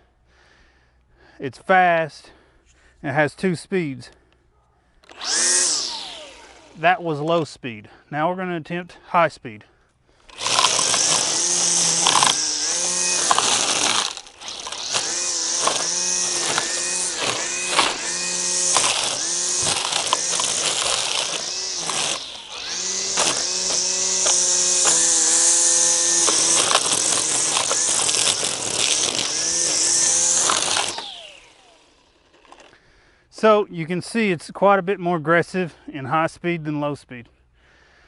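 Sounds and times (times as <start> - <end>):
string trimmer cutting grass: 5.0 - 7.5, 10.2 - 32.8.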